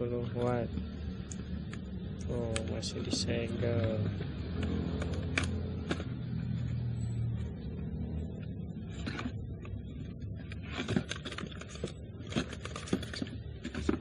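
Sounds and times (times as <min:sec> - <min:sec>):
plastic and cardboard packaging crinkling: 0:08.8 - 0:14.0.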